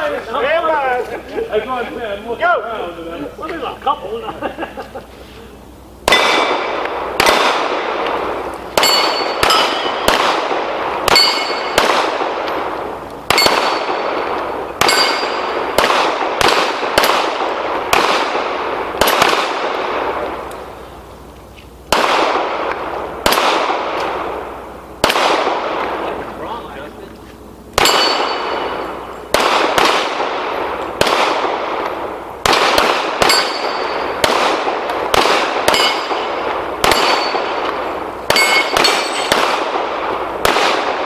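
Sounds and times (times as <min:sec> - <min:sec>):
pistol shots: 0:06.0 - 0:20.8, 0:21.9 - 0:26.2, 0:27.8 - 0:41.0
steel plates clanging: 0:11.1 - 0:11.8, 0:14.8 - 0:15.5, 0:35.7 - 0:36.2, 0:38.3 - 0:39.3.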